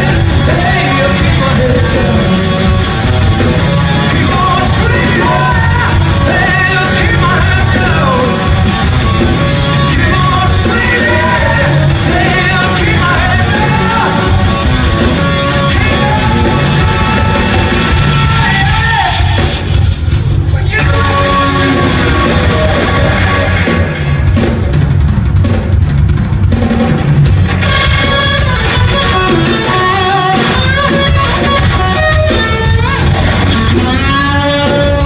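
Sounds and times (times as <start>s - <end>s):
singer belting and shouting: 0.0s - 19.8s, 20.4s - 24.4s
live rock band playing: 0.0s - 35.0s
steady drum beat: 0.0s - 35.0s.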